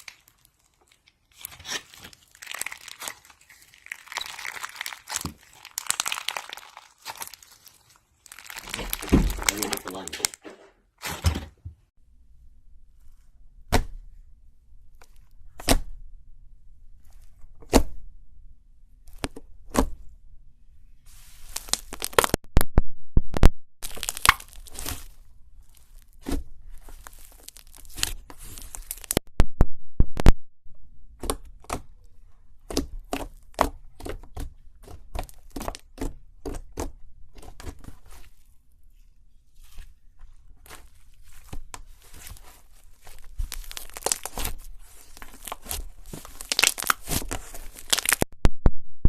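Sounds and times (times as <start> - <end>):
slime popping and crackling: 0.0 - 10.4, 21.4 - 22.4, 23.8 - 29.2, 40.6 - 48.3.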